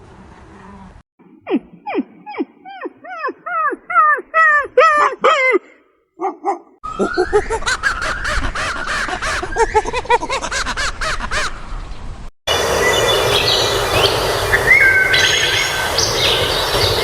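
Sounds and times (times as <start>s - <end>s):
dog yelping: 1.5s - 6.8s
birds calling harshly: 6.8s - 12.2s, 12.8s - 17.0s.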